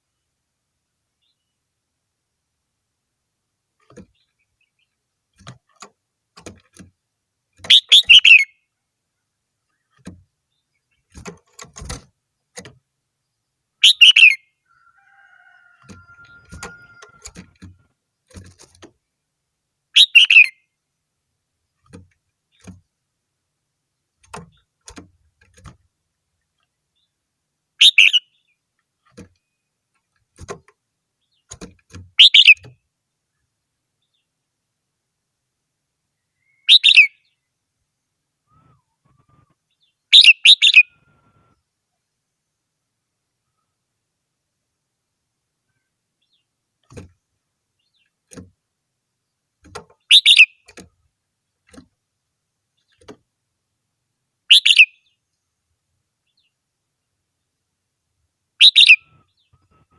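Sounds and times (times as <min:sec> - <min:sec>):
bird singing warbled phrases: 0:07.6 - 0:08.7, 0:13.2 - 0:14.6, 0:19.9 - 0:20.7, 0:27.8 - 0:28.7, 0:31.2 - 0:32.8, 0:36.2 - 0:37.5, 0:38.4 - 0:41.1, 0:49.1 - 0:50.8, 0:54.5 - 0:55.3, 0:58.6 - 0:59.9.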